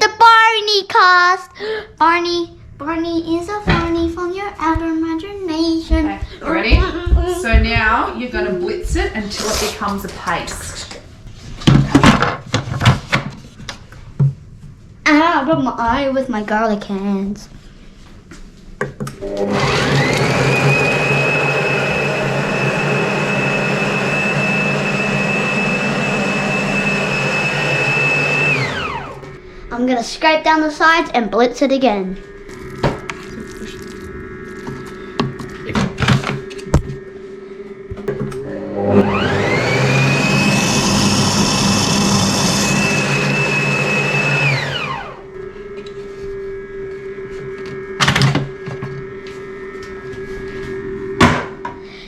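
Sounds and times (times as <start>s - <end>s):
blender motor whining: 19.2s - 29.4s, 37.9s - 47.1s.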